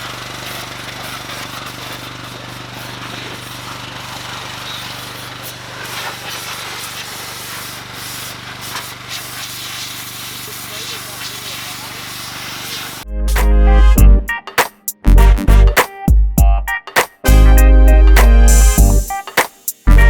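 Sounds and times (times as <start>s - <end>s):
pressure washer spraying water: 0.0s - 13.0s.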